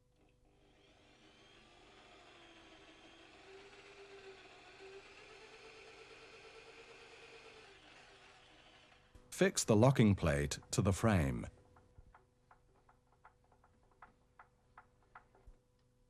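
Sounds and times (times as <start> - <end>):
electric drill whirring: 0.5 - 9.1.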